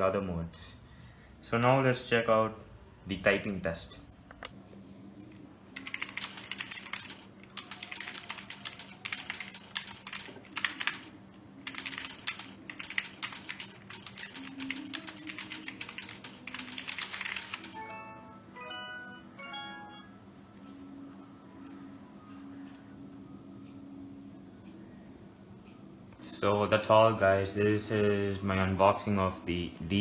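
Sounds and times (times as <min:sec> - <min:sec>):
faint steady hum: 0:00.0 - 0:30.0
fast typing on keyboard: 0:05.8 - 0:17.8.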